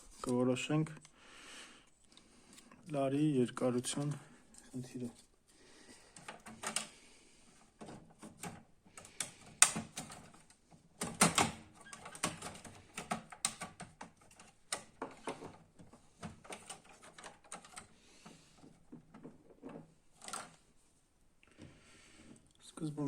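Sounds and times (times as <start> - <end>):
printer parts clicking and knocking: 6.2 - 6.9, 7.8 - 17.9.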